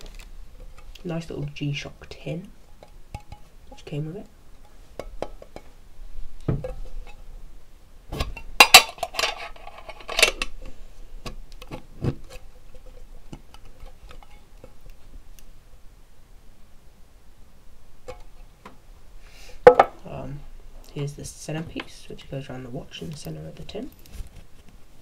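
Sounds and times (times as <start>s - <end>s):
metal tin clicks and knocks: 2.7s - 3.9s, 5.0s - 5.7s, 18.0s - 18.4s
metal lid clattering: 8.2s - 10.5s.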